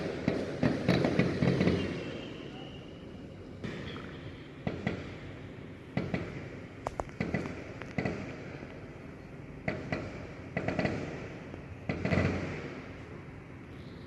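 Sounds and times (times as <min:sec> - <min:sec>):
fireworks bangs: 0:00.0 - 0:02.3, 0:03.6 - 0:09.0, 0:09.6 - 0:13.4.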